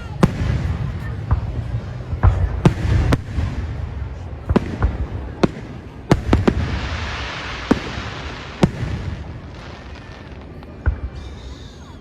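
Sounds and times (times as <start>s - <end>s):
fireworks exploding: 0.0s - 12.0s
firework hiss: 2.6s - 12.0s.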